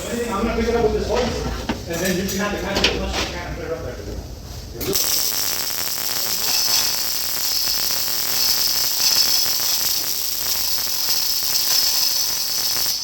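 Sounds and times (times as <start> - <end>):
welding arc crackling hiss: 4.7 - 13.0.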